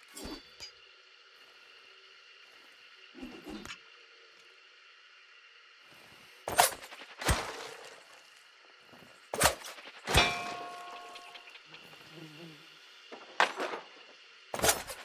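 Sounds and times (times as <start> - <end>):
throwing knives striking: 6.5 - 8.0, 9.3 - 11.5, 14.6 - 15.0.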